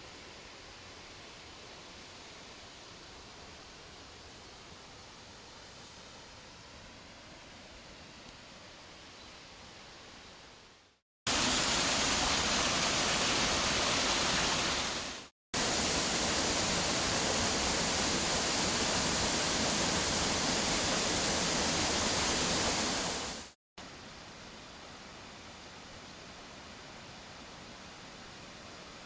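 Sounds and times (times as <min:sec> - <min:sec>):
waterfall rushing: 0:11.3 - 0:23.6.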